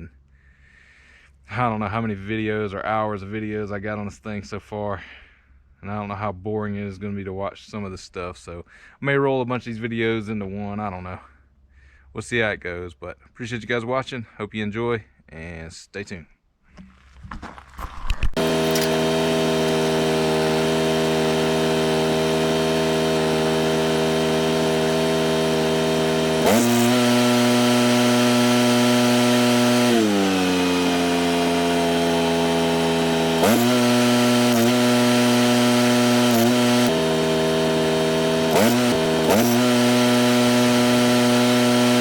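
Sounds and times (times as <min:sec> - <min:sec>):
engine running: 0:18.2 - 0:42.0.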